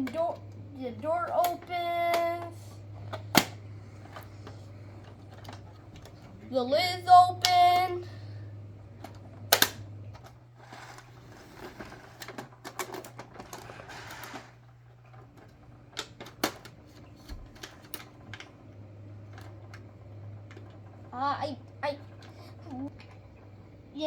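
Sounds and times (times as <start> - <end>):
low steady hum: 0.0 - 24.0
plastic parts clicking: 1.2 - 6.2, 9.0 - 18.6.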